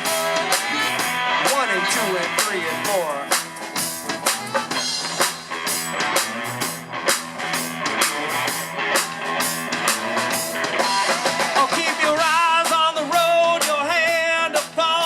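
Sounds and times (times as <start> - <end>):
wavering lead melody: 0.0 - 11.5
rock band playing: 0.0 - 15.0.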